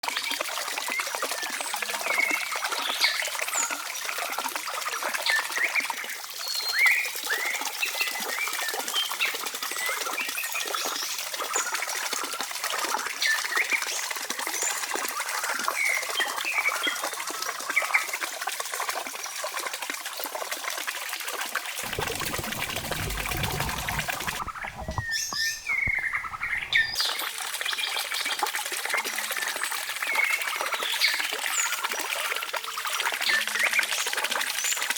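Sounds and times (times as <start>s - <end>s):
deep rumbling: 21.8s - 27.0s
birds chirping and calling: 21.9s - 27.0s.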